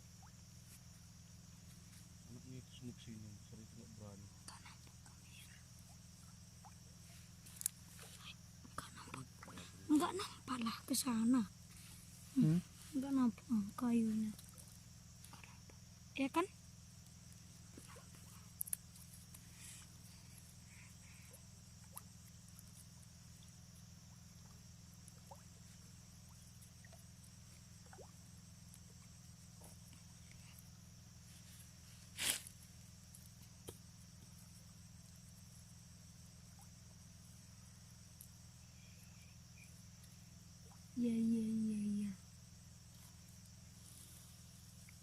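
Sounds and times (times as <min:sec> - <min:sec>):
high insect drone: 0:00.0 - 0:45.0.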